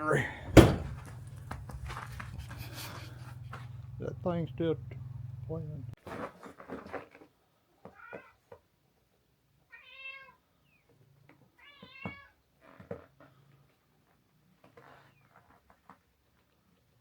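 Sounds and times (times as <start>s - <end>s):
soft knocks: 0.4s - 2.4s
cat meowing: 9.7s - 10.4s, 11.6s - 12.3s.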